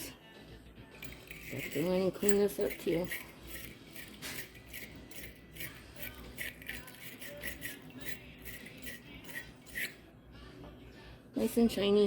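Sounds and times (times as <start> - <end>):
wire brush scrubbing metal: 1.0 - 10.0.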